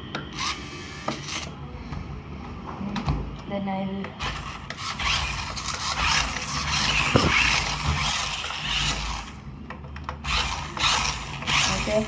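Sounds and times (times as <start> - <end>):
toy truck motor whirring: 0.3 - 1.6, 4.2 - 9.5, 10.2 - 12.0
tyres scraping: 4.6 - 9.2.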